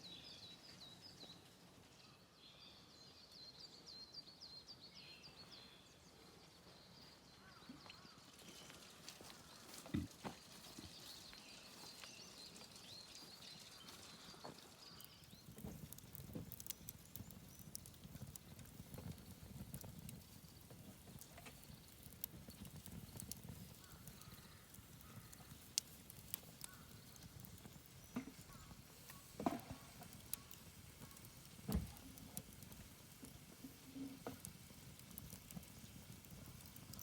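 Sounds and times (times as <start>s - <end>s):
faint birdsong: 0.0s - 37.0s
wood campfire crackling: 8.2s - 37.0s.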